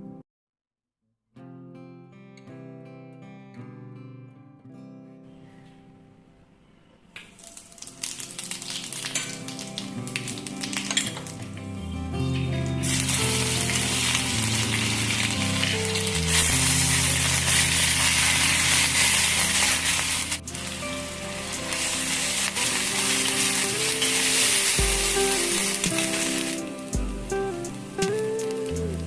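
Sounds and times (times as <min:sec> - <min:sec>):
food sizzling in oil: 0:07.3 - 0:11.5, 0:12.3 - 0:29.0
background music: 0:07.4 - 0:29.0.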